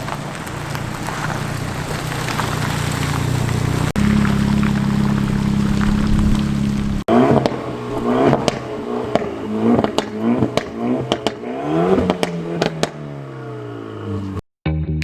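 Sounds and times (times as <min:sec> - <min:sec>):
exhaust pops and crackles: 0:00.0 - 0:13.2
race car engines revving: 0:00.0 - 0:14.4
music: 0:14.6 - 0:15.0.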